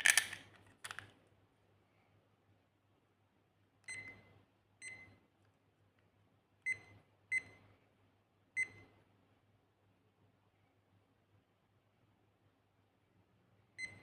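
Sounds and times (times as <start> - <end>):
kitchen timer beeps: 3.9 - 4.2, 4.8 - 5.2, 13.8 - 14.0.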